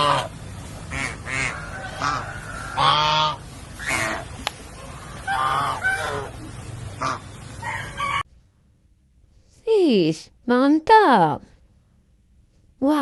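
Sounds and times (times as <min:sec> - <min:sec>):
duck quacking: 0:00.0 - 0:08.2.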